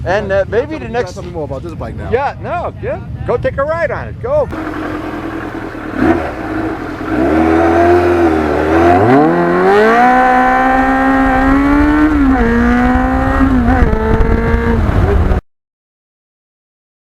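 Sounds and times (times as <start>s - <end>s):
motorcycle engine accelerating: 4.5s - 15.4s
wind rumbling on microphone: 5.6s - 15.4s.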